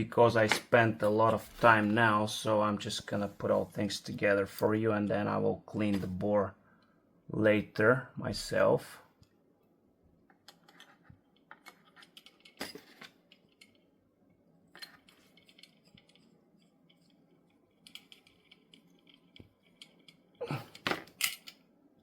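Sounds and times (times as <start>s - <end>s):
metal gun parts clicking: 10.5s - 13.9s, 14.8s - 21.7s.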